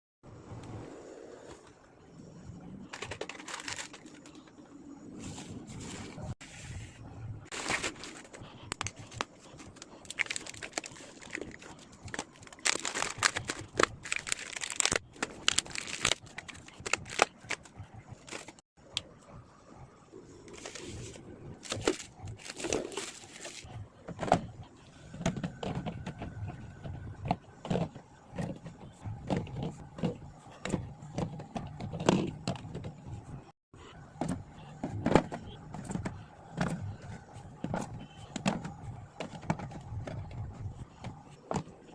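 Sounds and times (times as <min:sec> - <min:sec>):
plastic wrapping crinkling: 0:03.0 - 0:04.4, 0:07.5 - 0:18.6, 0:21.6 - 0:23.7.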